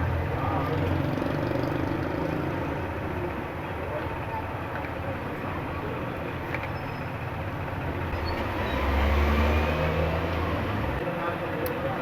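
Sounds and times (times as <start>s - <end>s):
vehicle engine drone: 7.2s - 12.0s.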